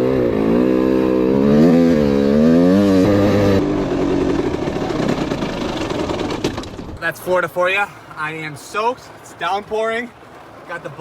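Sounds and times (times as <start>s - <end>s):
dirt bike engine revving: 0.0s - 6.5s.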